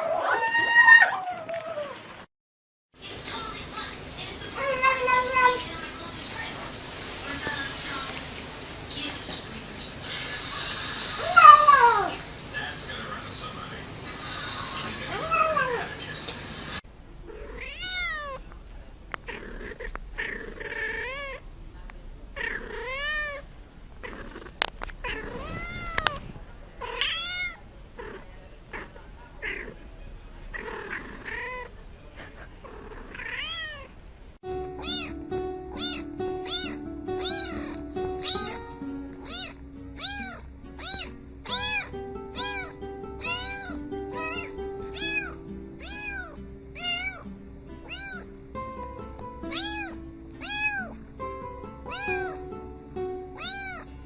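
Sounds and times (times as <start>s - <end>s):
cat meowing: 11.2s - 12.2s, 15.1s - 15.9s, 17.3s - 18.4s, 19.3s - 21.4s, 22.4s - 23.4s, 24.0s - 26.2s, 26.8s - 28.2s, 30.6s - 31.7s, 33.1s - 33.9s, 34.7s - 48.3s, 49.5s - 51.0s, 51.9s - 52.5s, 53.4s - 53.9s
background music: 34.4s - 54.0s.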